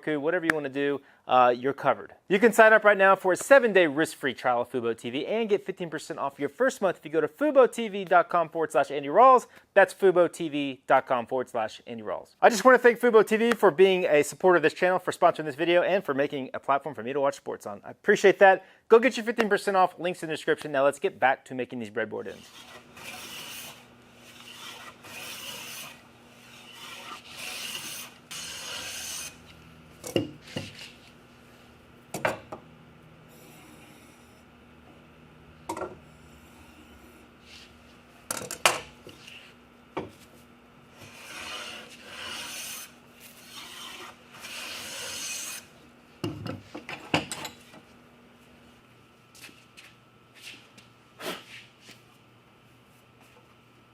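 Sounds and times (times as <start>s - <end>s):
hand tool rasping wood: 22.4s - 29.6s, 41.0s - 45.7s.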